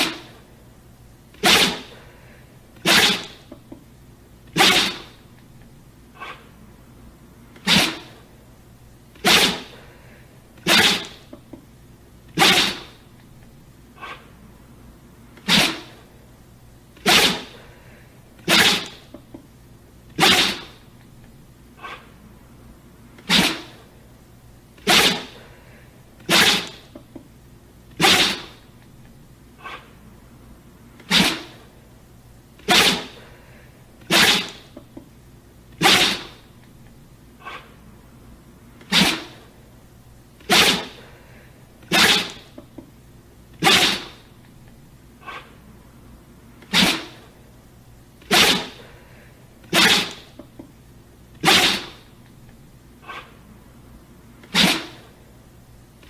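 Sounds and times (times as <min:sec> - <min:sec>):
dog sneezing: 0:00.0 - 0:00.4, 0:01.3 - 0:03.5, 0:04.5 - 0:05.2, 0:06.2 - 0:06.5, 0:07.6 - 0:08.2, 0:09.2 - 0:11.4, 0:12.4 - 0:13.0, 0:14.0 - 0:14.3, 0:15.4 - 0:16.1, 0:17.0 - 0:19.2, 0:20.2 - 0:20.8, 0:21.8 - 0:22.1, 0:23.2 - 0:23.9, 0:24.8 - 0:27.0, 0:28.0 - 0:28.7, 0:29.6 - 0:29.9, 0:31.0 - 0:31.7, 0:32.6 - 0:34.8, 0:35.8 - 0:36.5, 0:37.4 - 0:37.8, 0:38.8 - 0:39.5, 0:40.4 - 0:42.6, 0:43.6 - 0:44.3, 0:45.2 - 0:45.6, 0:46.6 - 0:47.3, 0:48.2 - 0:50.4, 0:51.4 - 0:52.1, 0:53.0 - 0:53.4, 0:54.4 - 0:55.1.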